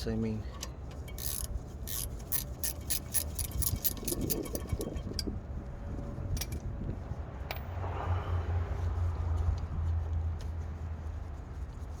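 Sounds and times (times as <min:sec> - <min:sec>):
ratchet wrench clicking: 0:00.5 - 0:05.3.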